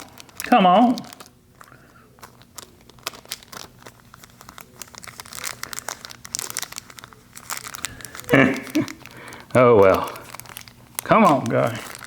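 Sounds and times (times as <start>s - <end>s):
plastic bag crinkling: 0.0s - 12.0s.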